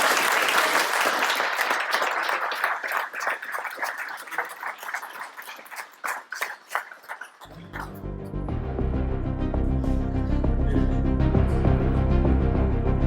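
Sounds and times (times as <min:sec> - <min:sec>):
audience applauding: 0:00.0 - 0:08.0.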